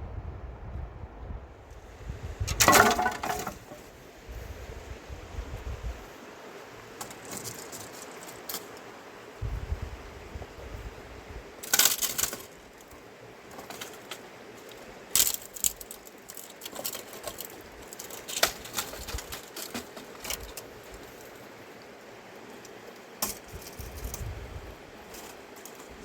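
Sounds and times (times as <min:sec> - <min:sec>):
small hard objects clinking: 0:02.6 - 0:03.8.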